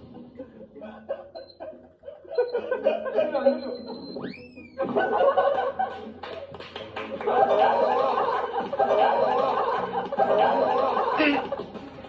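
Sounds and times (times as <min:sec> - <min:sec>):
people laughing: 0:00.0 - 0:04.1, 0:04.8 - 0:06.4, 0:07.2 - 0:11.8
people talking: 0:11.2 - 0:11.4.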